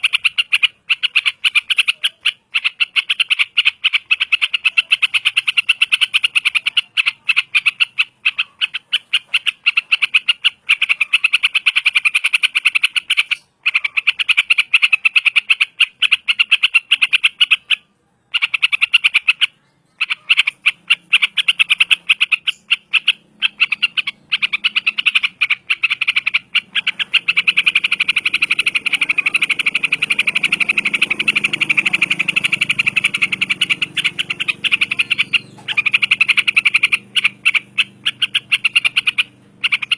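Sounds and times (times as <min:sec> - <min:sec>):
bulbul chattering call: 0:00.0 - 0:39.9.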